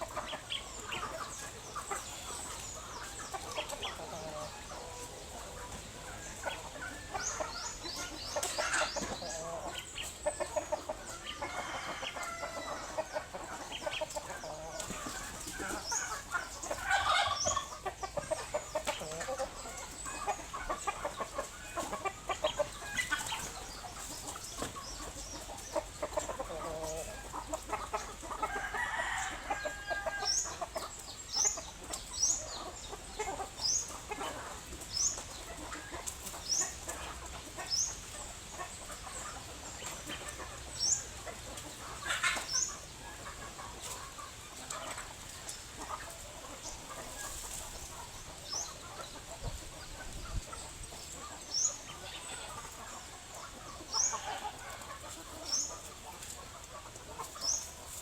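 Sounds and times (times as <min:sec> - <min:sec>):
chickens clucking: 0:00.0 - 0:58.0
rooster crowing: 0:11.4 - 0:13.0, 0:28.5 - 0:30.4.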